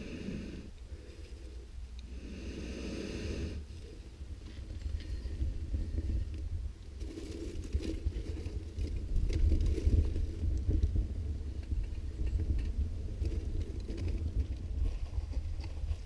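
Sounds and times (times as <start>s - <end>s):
gusty wind buffeting microphone: 3.3s - 16.0s
faint clicks and crackles: 3.7s - 16.0s.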